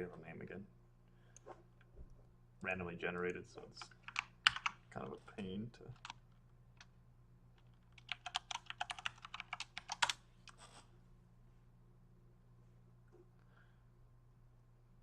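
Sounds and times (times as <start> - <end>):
low steady hum: 0.0 - 15.0
typing on computer keyboard: 3.8 - 4.8, 5.9 - 6.2, 7.6 - 10.2.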